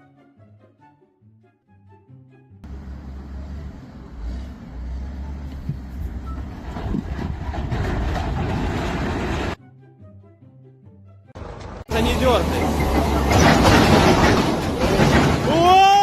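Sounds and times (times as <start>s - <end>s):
heavy machinery engine rumble: 2.6s - 9.6s, 11.4s - 16.0s
rough machinery clatter: 5.6s - 9.6s, 11.6s - 16.0s.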